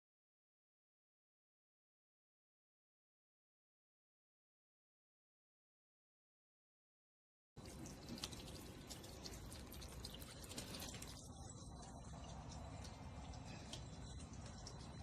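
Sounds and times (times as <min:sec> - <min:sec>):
fountain water trickling and dripping: 0:07.6 - 0:15.0.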